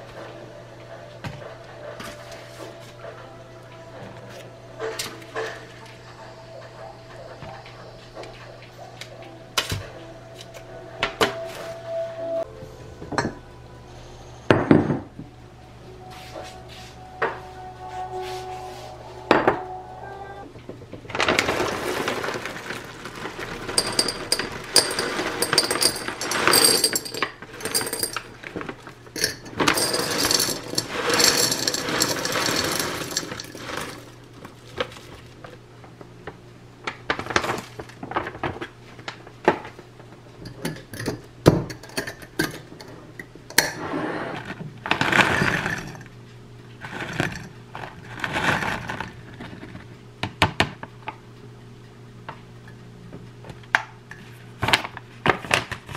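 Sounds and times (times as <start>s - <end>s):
faint steady hum: 3.0s - 21.2s
utensils clicking and tapping: 23.7s - 34.1s.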